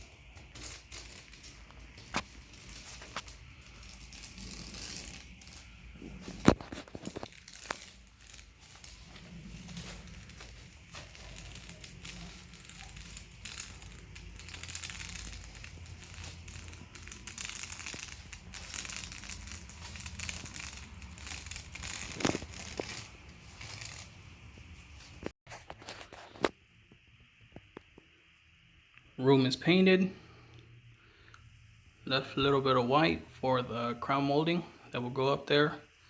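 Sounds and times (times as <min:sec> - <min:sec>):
tape peeling and crinkling: 0:00.0 - 0:26.6.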